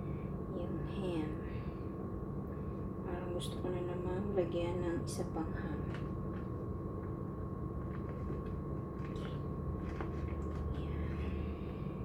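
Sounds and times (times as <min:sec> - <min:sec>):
low background hum: 0:00.0 - 0:12.0.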